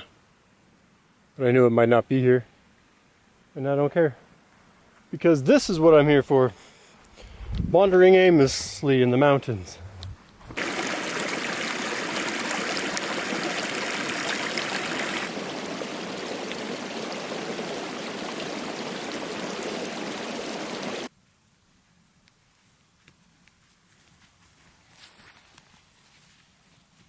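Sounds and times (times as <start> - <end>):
mountain stream rushing: 10.4 - 21.1.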